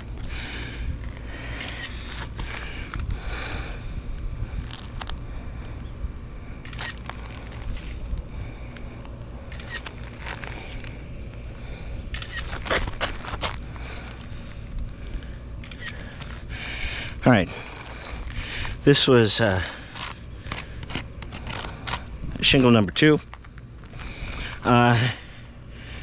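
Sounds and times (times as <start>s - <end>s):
low steady rumble: 0.0s - 26.0s
roof shingles scraping and crackling: 12.5s - 14.7s.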